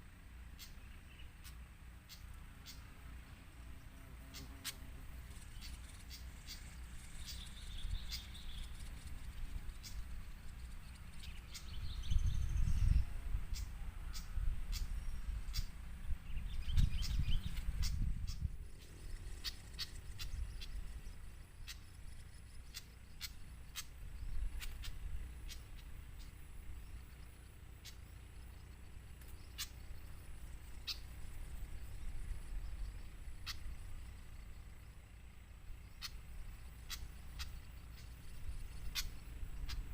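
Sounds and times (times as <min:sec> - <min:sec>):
small birds chipping: 0:00.0 - 0:39.9.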